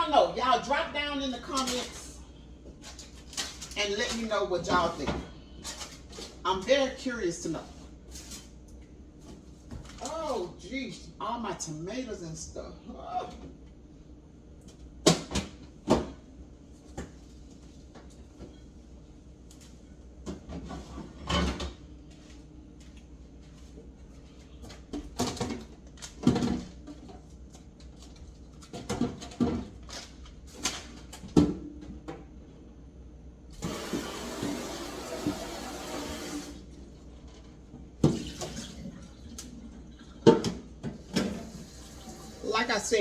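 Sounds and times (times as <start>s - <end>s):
water running: 33.6s - 36.7s, 41.2s - 43.0s.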